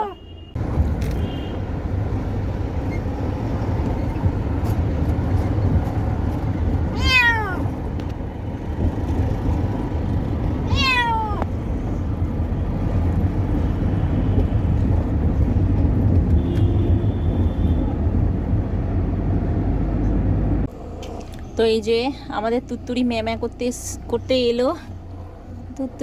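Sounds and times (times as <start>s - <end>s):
cat meowing: 0.0s - 0.2s, 6.9s - 7.7s, 10.6s - 11.5s
vehicle rumble: 0.0s - 26.0s.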